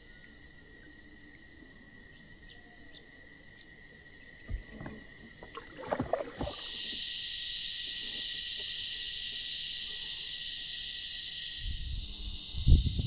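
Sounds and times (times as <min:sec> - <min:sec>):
knocks and clatter on kayak: 0:04.5 - 0:07.0.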